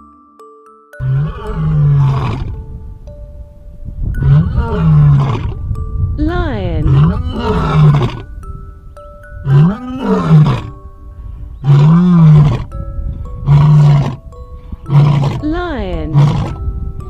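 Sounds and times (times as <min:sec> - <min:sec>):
light background music: 0:00.0 - 0:17.0
lion roaring: 0:01.0 - 0:02.6, 0:04.2 - 0:05.6, 0:06.8 - 0:08.2, 0:09.4 - 0:10.7, 0:11.6 - 0:12.7, 0:13.4 - 0:14.2, 0:14.9 - 0:15.4, 0:16.1 - 0:16.5.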